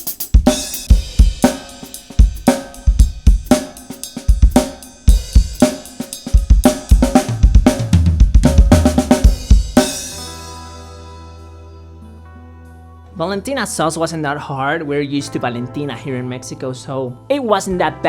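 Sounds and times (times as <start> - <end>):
drum kit groove: 0.0 - 11.2
backing track music: 0.0 - 18.0.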